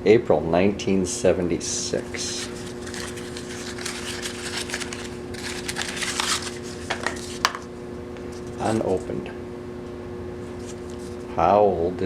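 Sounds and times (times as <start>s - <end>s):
steady low hum: 0.0s - 12.0s
handling clicks and rustles: 2.1s - 9.3s.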